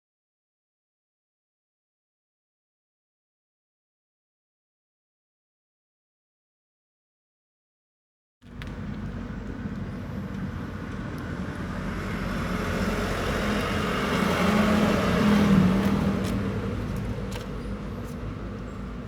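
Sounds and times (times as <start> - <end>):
vehicle passing by: 9.5 - 19.0.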